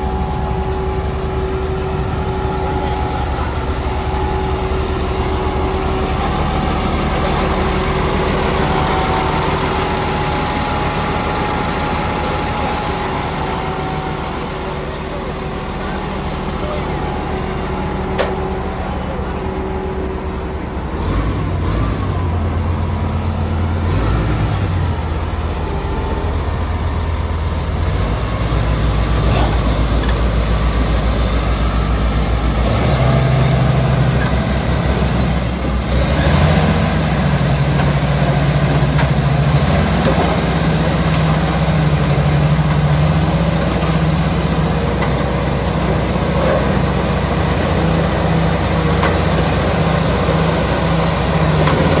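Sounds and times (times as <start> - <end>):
bulldozer diesel engine running: 0.0 - 52.0.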